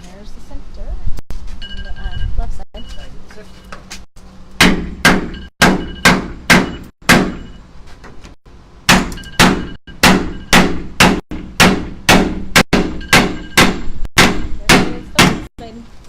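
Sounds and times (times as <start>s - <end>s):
hammer blows: 4.6s - 7.6s, 8.9s - 15.5s.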